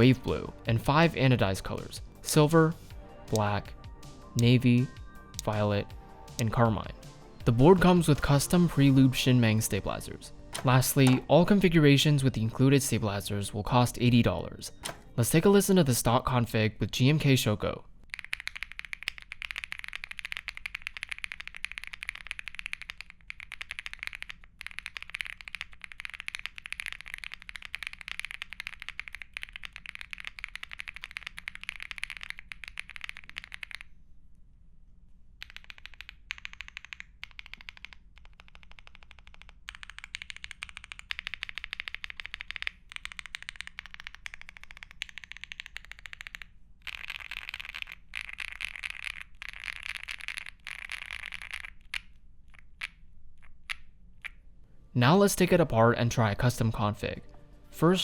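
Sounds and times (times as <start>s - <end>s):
mechanical keyboard typing: 3.3s - 3.6s, 18.1s - 33.9s, 35.4s - 52.0s.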